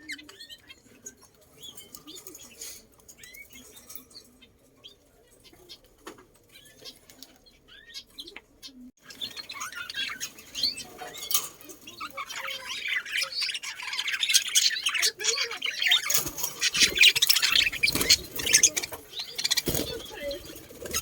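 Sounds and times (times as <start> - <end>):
birds chirping: 0.0 - 21.0.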